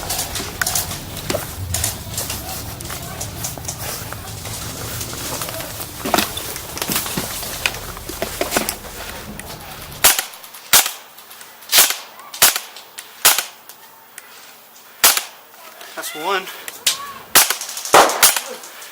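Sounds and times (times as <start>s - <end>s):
rumbling noise: 0.0s - 10.4s
airsoft gun shots: 10.0s - 11.0s, 11.7s - 13.6s, 15.0s - 15.4s, 17.3s - 18.6s.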